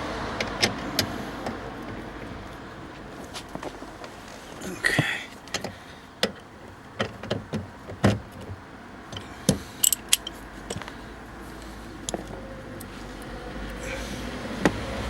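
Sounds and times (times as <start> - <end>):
tools and parts clicking and tapping: 9.1 - 10.9, 12.0 - 12.9.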